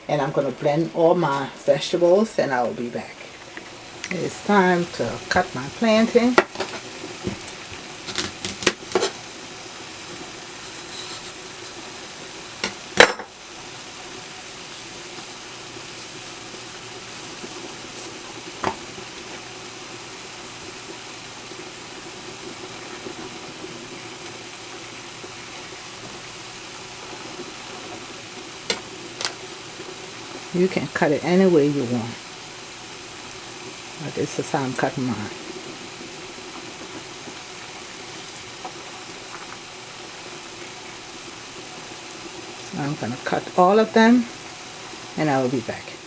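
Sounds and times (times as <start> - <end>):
steady hiss: 0.0 - 46.0.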